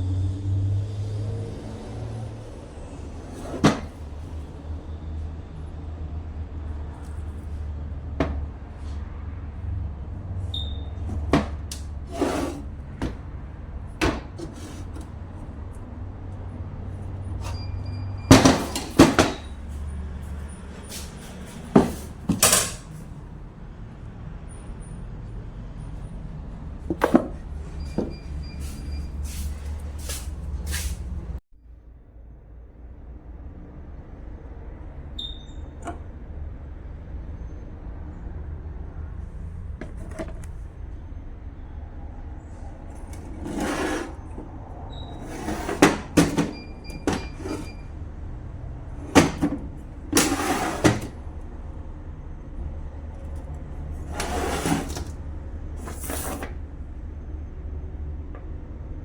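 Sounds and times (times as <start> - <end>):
tools clanking: 18.3 - 19.6, 20.9 - 23.0, 39.8 - 40.6, 45.2 - 47.8, 49.0 - 51.2.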